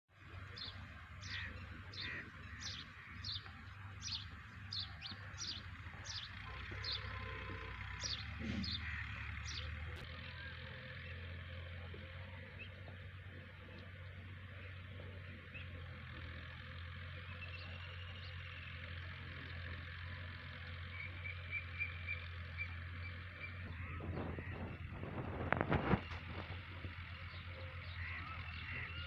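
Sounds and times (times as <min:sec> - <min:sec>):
bird chirping: 0:00.4 - 0:11.3.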